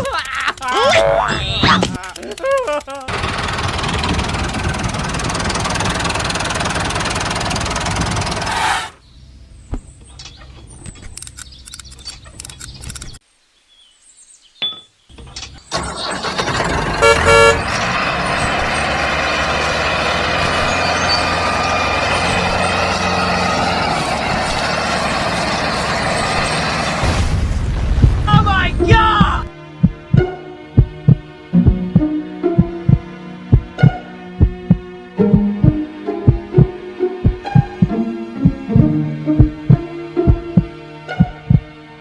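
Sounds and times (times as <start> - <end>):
scattered clicks: 0.0 - 0.7, 1.8 - 3.2, 11.0 - 13.2
dense machine noise: 3.1 - 9.0, 15.7 - 27.0
horn toot: 15.7 - 17.9.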